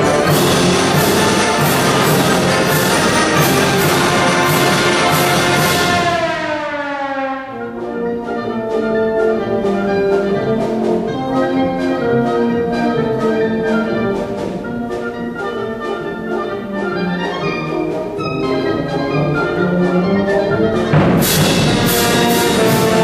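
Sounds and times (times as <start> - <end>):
concert wind band playing: 0.0 - 23.0.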